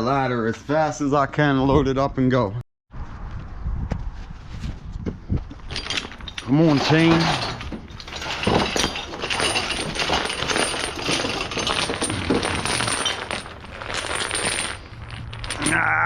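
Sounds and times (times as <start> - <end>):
heavy chain links rattling: 5.7 - 16.0.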